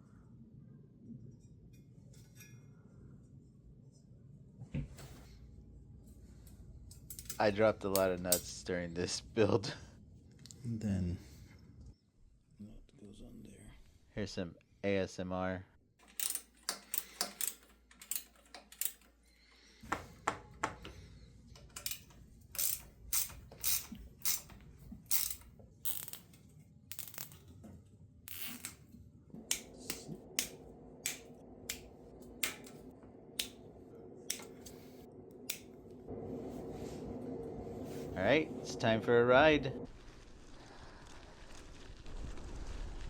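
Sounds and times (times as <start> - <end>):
faint low hum: 0.0 - 14.9, 20.8 - 43.0
metal hardware and tools clicking: 16.0 - 19.2, 21.6 - 27.4.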